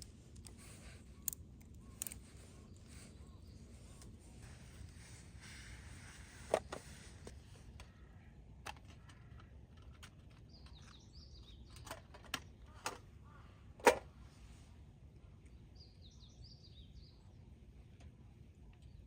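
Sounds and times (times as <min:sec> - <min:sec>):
faint bird chirps: 0:00.6 - 0:05.2.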